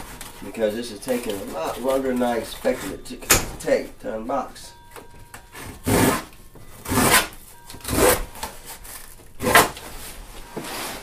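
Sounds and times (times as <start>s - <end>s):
knife sawing through cardboard: 6.8s - 7.3s.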